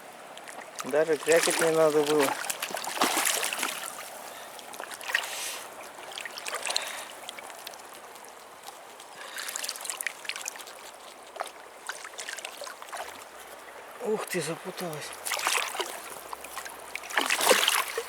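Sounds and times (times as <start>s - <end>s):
water splashing and trickling: 0.0s - 18.0s.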